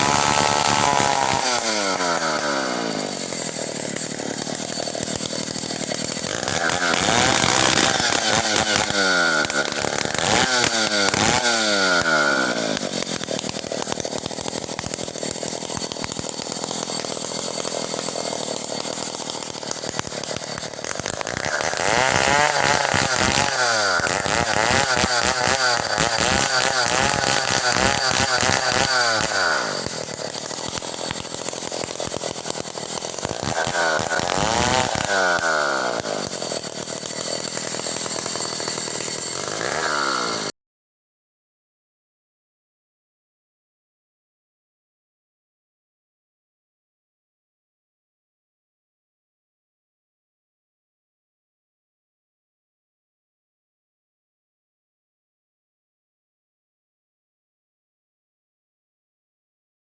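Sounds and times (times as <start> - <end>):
chainsaw engine revving: 0.0 - 40.6.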